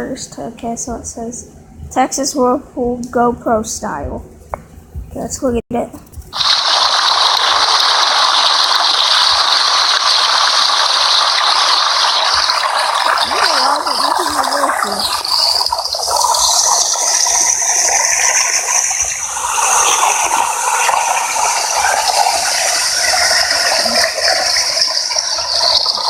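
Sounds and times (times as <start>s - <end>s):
water rushing in a whirlpool: 6.4s - 26.0s.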